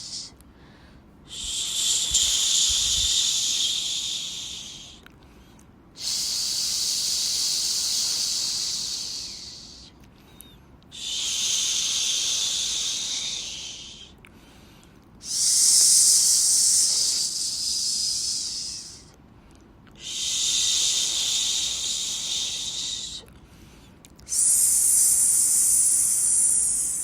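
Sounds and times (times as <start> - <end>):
shushing hiss: 0.0 - 0.4, 1.2 - 5.0, 6.0 - 10.0, 10.9 - 14.2, 15.2 - 19.2, 20.0 - 23.3, 24.2 - 27.0.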